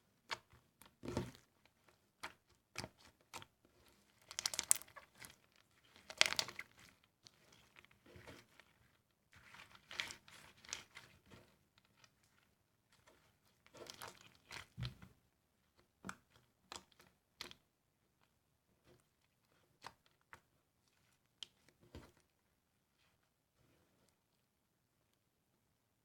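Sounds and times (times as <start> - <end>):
slime crackling and popping: 4.2 - 5.2.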